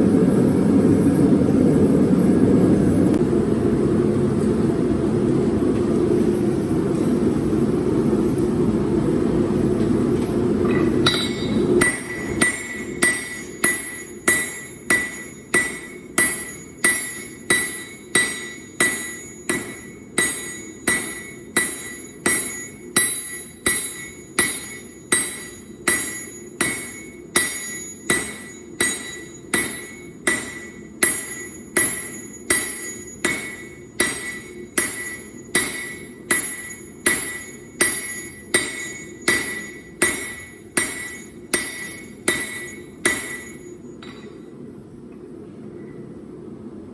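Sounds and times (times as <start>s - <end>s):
hammer ringing on anvil: 10.6s - 44.6s.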